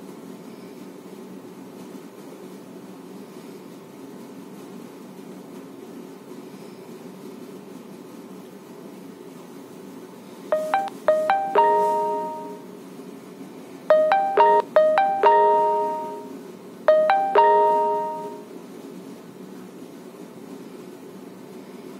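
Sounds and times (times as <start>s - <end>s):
phone ringtone melody: 10.5s - 12.6s, 13.9s - 16.3s, 16.9s - 18.4s.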